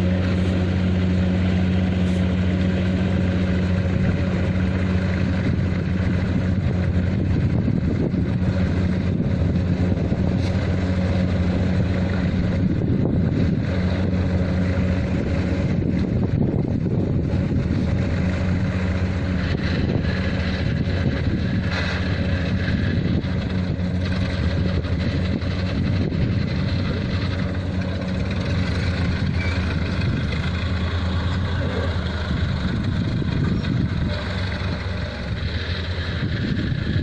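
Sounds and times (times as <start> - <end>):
diesel engine droning: 0.0 - 37.0.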